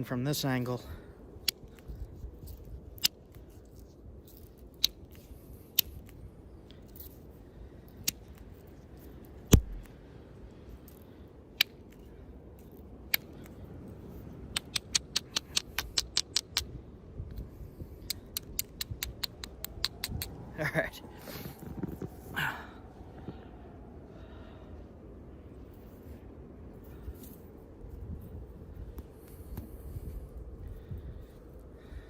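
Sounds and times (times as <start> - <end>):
light stone ticks: 1.4 - 7.2, 10.7 - 13.6, 17.3 - 20.4
stone clicks from flint knapping: 1.4 - 7.2, 7.8 - 10.0, 11.6 - 13.6, 14.5 - 16.7, 18.0 - 20.4.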